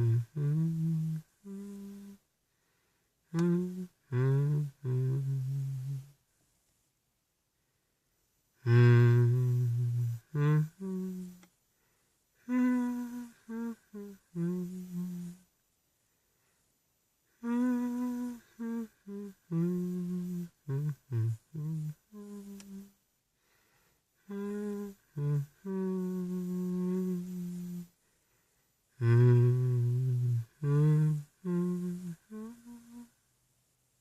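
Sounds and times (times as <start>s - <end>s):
person humming: 0.0s - 2.3s, 3.3s - 6.2s, 8.6s - 11.6s, 12.4s - 15.5s, 17.3s - 23.0s, 24.2s - 28.0s, 28.9s - 33.2s.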